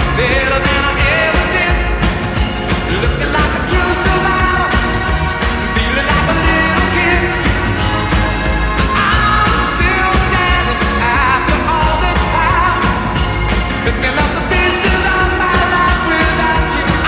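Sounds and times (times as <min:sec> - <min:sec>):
rock song with lead vocal: 0:00.0 - 0:17.0.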